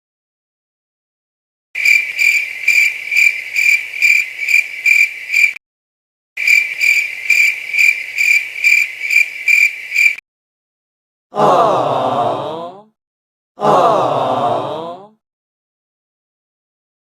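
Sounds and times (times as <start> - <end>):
cricket chirping: 1.8 - 5.6, 6.4 - 10.2.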